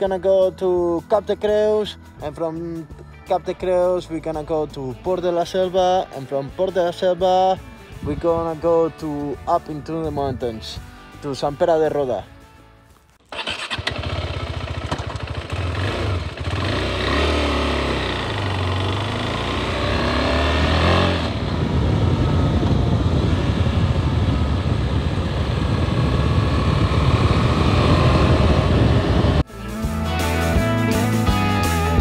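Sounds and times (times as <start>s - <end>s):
motorcycle engine revving: 13.3s - 29.4s.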